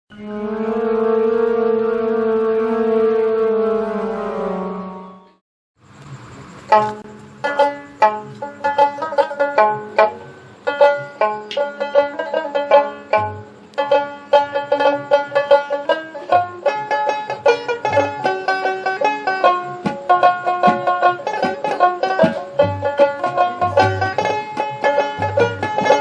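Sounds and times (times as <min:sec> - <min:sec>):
plucked string instrument tune: 0:06.7 - 0:26.0.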